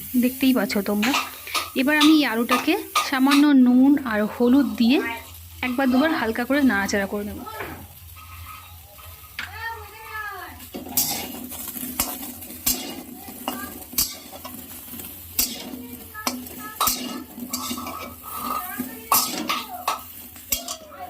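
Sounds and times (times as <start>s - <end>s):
potatoes tossed in a pan: 0.0s - 21.0s
spatula scraping and knocking a pan: 0.8s - 4.8s, 10.6s - 21.0s.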